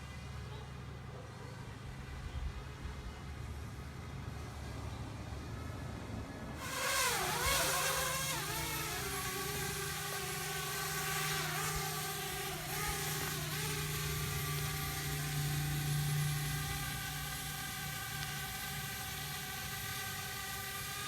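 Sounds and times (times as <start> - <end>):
drone propellers whining: 6.6 - 21.0.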